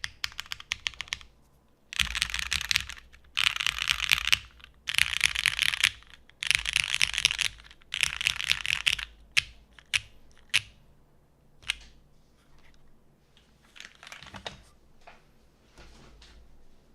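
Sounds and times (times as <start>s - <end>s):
mechanical keyboard keystrokes: 2.0s - 10.7s.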